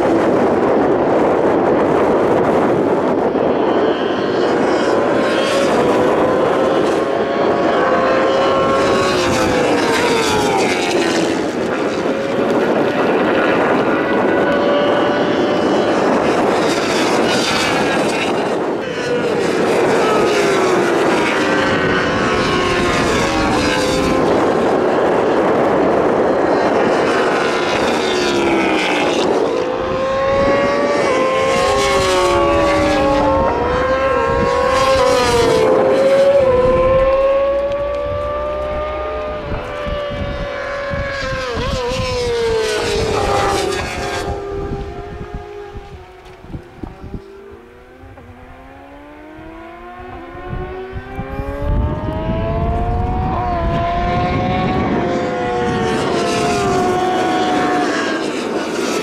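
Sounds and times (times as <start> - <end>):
racing motorcycles passing at high revs: 0.0 - 59.0.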